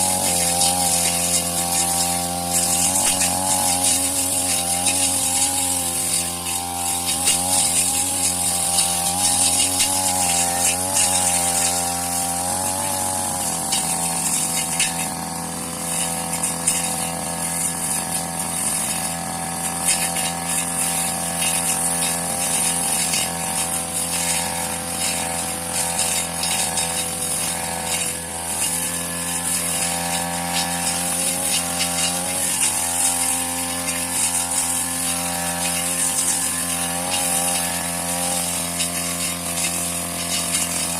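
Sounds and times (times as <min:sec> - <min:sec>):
brush cutter engine cutting grass: 0:00.0 - 0:40.9.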